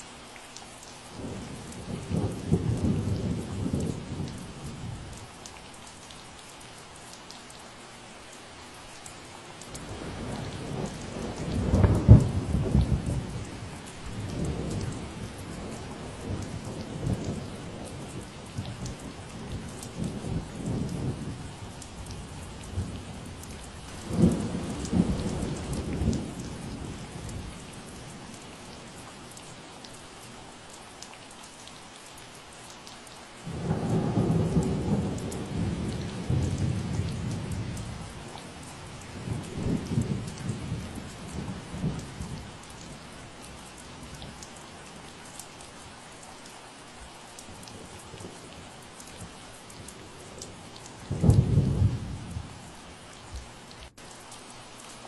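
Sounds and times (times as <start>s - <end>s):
rain falling: 0.0s - 55.0s
thunder rumbling: 9.9s - 28.7s, 33.5s - 44.2s, 49.1s - 52.7s.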